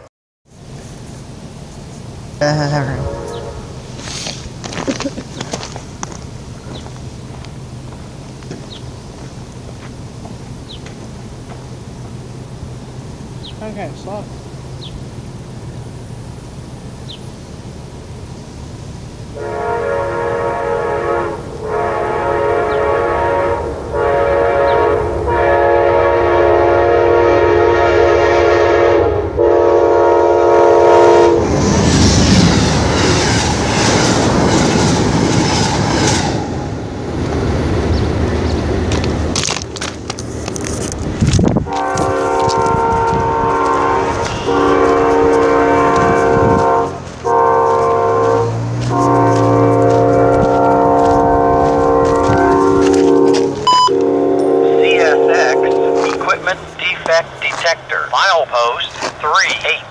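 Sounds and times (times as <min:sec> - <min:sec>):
train passing rumble: 0:00.0 - 0:59.9
train air horn blasts: 0:03.0 - 0:04.2, 0:19.4 - 0:31.5, 0:41.6 - 0:56.6.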